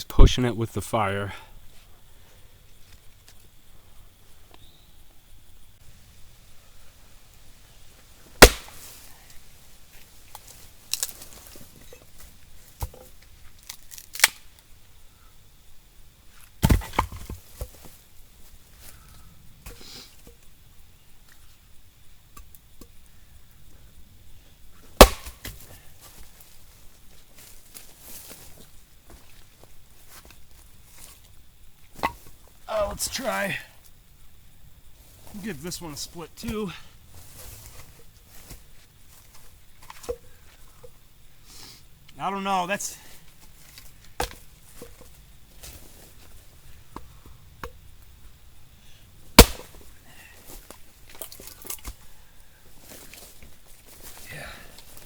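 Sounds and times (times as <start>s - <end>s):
axe chopping firewood: 8.4s - 8.9s, 16.6s - 17.4s, 25.0s - 25.7s, 49.4s - 49.8s.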